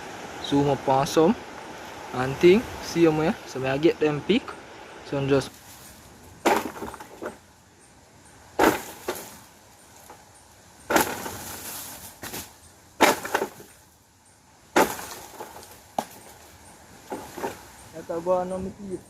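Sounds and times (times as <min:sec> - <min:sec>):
coconuts being struck: 0:06.4 - 0:07.4, 0:08.6 - 0:09.4, 0:10.9 - 0:11.5, 0:13.0 - 0:13.7, 0:14.7 - 0:16.2.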